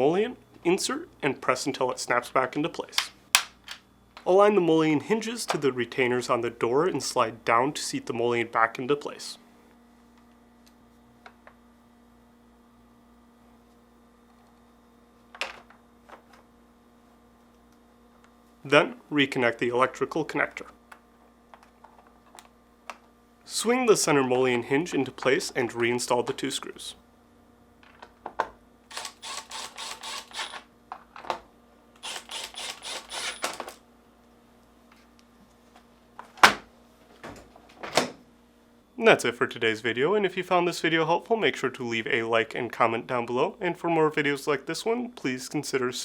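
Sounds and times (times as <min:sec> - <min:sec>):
steady low hum: 0:00.0 - 0:46.0
screwdriver scraping clicks: 0:28.9 - 0:30.6, 0:32.0 - 0:33.8.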